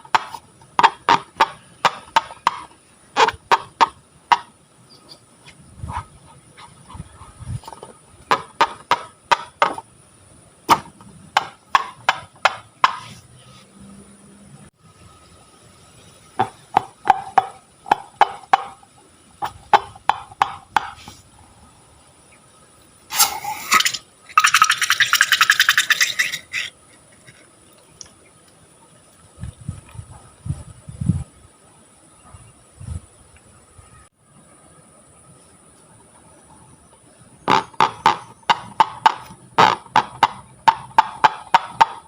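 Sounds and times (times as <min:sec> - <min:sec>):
rapid rhythmic scraping: 0:23.5 - 0:27.5.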